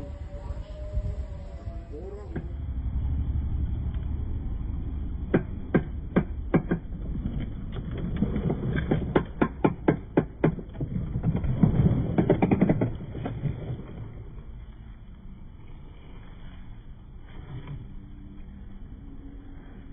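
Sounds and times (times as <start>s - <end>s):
low rumble: 0.0s - 19.9s.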